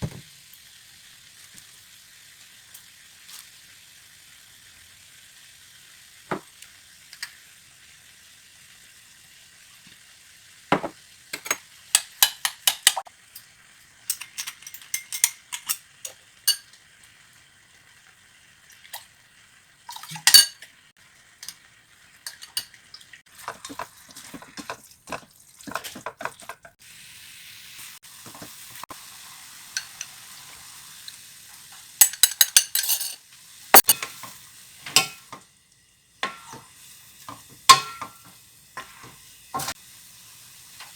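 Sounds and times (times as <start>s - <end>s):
food sizzling in a pan: 0.0s - 40.9s
utensil knocking against pan: 10.7s - 11.0s.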